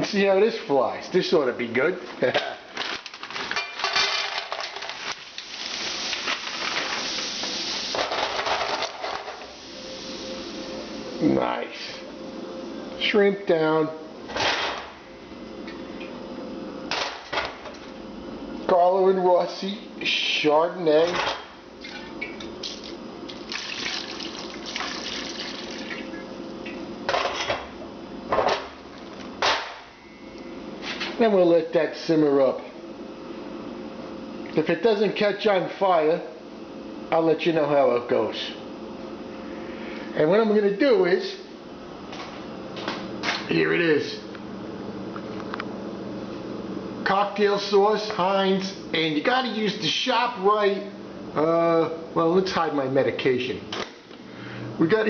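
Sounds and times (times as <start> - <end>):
shrimp sizzling in pan: 4.9 - 8.1
wine splashing into frying pan: 22.7 - 26.2.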